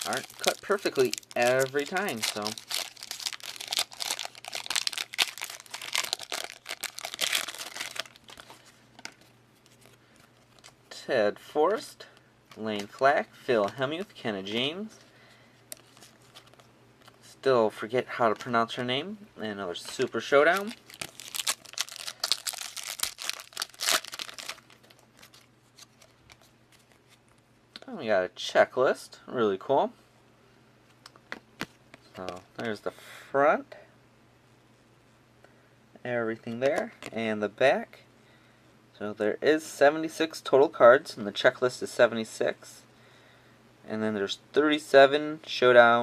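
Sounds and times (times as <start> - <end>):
wrapper rustling and crackling: 0.0 - 10.8, 19.9 - 27.4.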